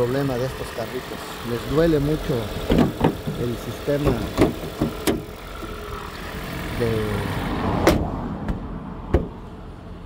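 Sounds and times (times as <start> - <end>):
car engine idling: 0.0 - 7.6.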